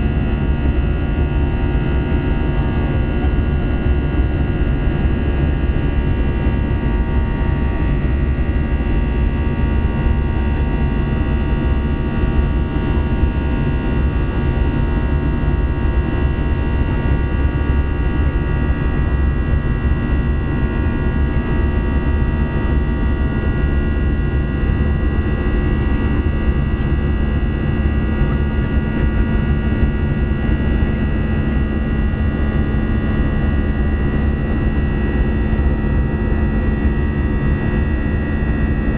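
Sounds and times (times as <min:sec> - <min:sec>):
steady whining tones: 0:00.0 - 0:16.5
jet engine rumble in cabin: 0:00.0 - 0:38.9.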